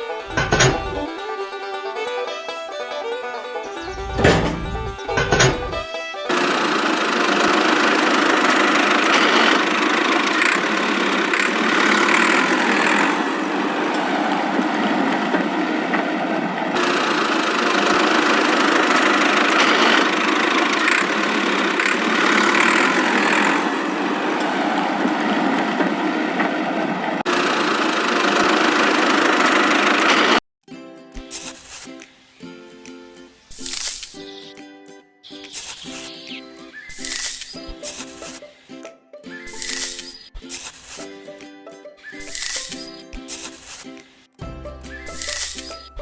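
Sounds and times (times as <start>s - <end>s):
small motor whirring: 6.3s - 13.7s, 16.8s - 24.6s, 27.3s - 30.4s.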